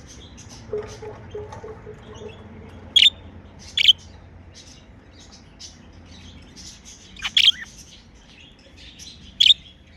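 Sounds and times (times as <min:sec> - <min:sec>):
budgerigars chirping: 0:03.0 - 0:04.0, 0:07.0 - 0:07.9, 0:09.4 - 0:09.6
loud sharp bird call: 0:07.2 - 0:07.7.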